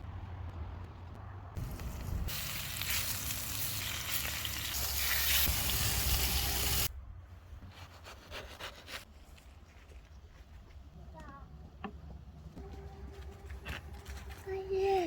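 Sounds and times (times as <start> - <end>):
fish sizzling on a grill: 1.6 - 6.9.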